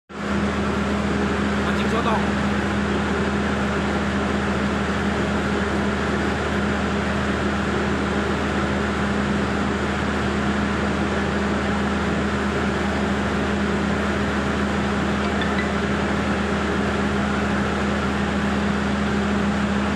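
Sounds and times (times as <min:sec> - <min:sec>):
engine droning: 0:11.1 - 0:19.9.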